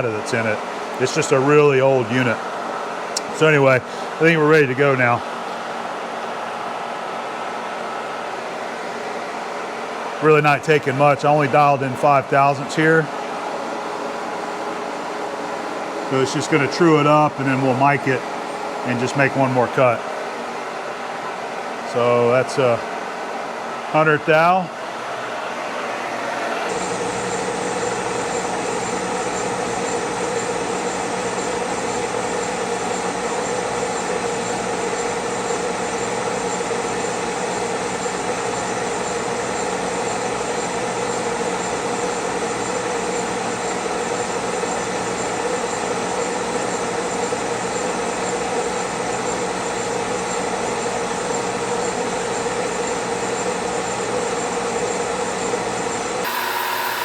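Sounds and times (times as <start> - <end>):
milling machine running: 26.0 - 39.5, 56.2 - 57.0
gear train whine: 56.2 - 57.0.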